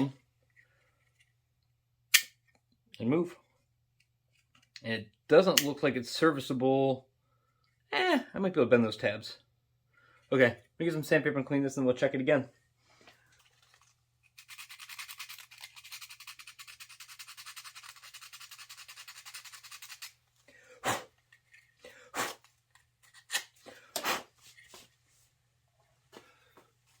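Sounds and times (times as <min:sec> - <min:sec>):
sandpaper rubbing on metal: 0:14.4 - 0:20.2.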